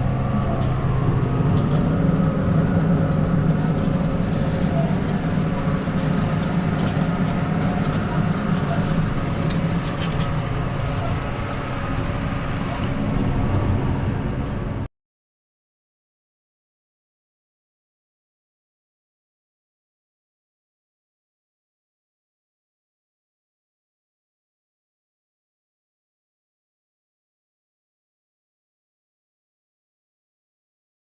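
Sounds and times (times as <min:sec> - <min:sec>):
tractor diesel engine under load: 0:00.0 - 0:14.9.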